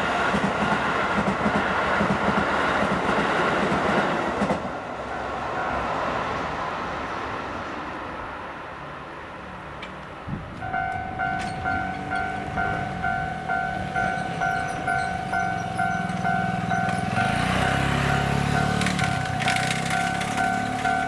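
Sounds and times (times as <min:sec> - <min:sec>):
approaching train rumble: 0:00.0 - 0:21.0
level crossing warning bell: 0:05.0 - 0:06.2, 0:10.4 - 0:21.0.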